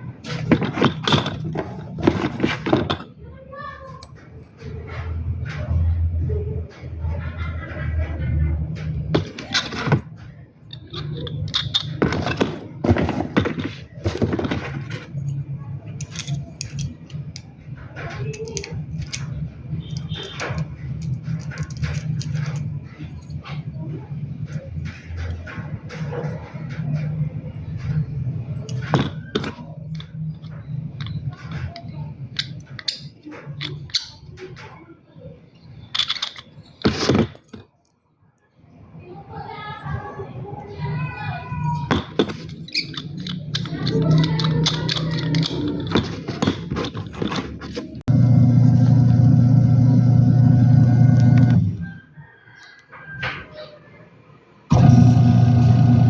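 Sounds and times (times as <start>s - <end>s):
metal clinking and rattling: 0.2s - 3.2s, 8.9s - 23.7s, 27.8s - 34.6s, 35.7s - 37.6s, 41.6s - 48.1s
clicks and taps of parts: 10.6s - 23.6s, 28.6s - 34.7s, 35.9s - 37.7s, 41.8s - 48.1s.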